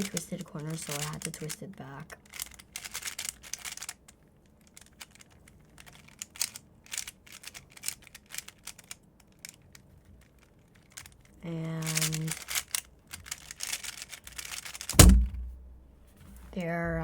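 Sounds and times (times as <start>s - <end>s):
speed cube clicking: 0.0s - 15.0s.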